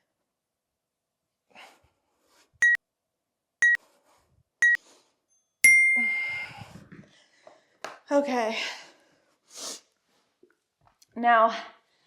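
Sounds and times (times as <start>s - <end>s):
short high timer beeps: 5.7s - 6.6s.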